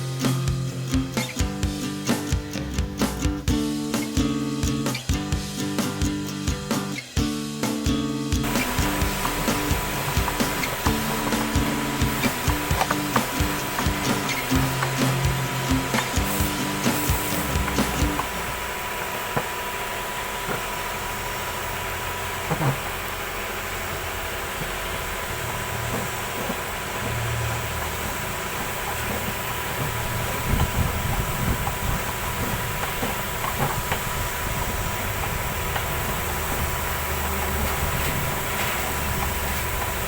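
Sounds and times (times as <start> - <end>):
mechanical noise with hiss: 0.0 - 40.0
low hum: 8.4 - 40.0.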